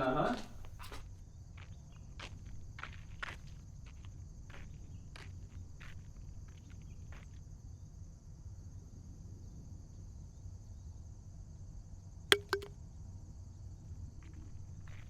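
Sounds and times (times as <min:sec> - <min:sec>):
sharp clicks: 0:12.3 - 0:12.7.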